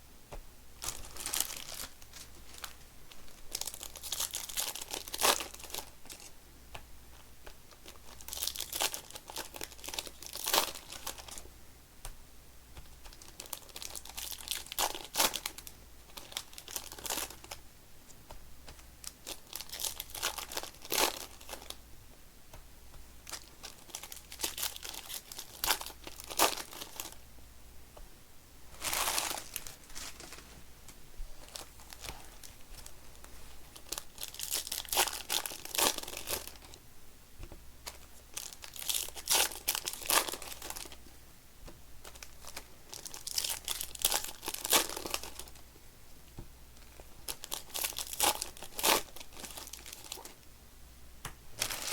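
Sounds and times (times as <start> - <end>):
foil wrappers torn and crinkled: 0.8 - 6.3, 7.7 - 11.4, 13.1 - 17.6, 19.0 - 21.8, 23.2 - 27.2, 31.4 - 36.8, 37.8 - 41.0, 42.0 - 45.6, 46.8 - 50.3, 51.6 - 51.9.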